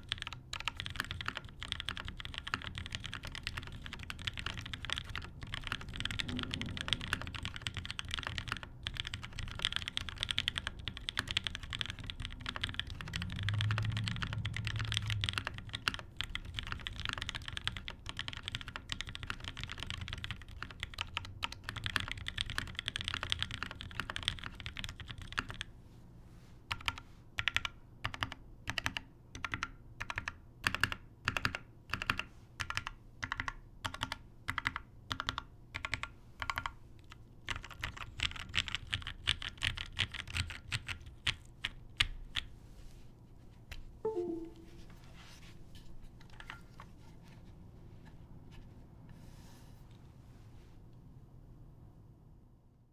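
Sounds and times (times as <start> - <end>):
mechanical keyboard typing: 0.0 - 25.7, 26.7 - 42.5.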